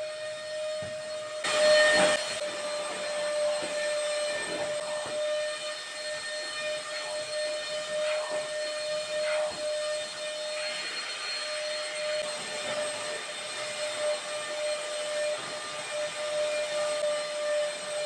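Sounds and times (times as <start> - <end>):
appliance motor whining hum: 0.0 - 18.0.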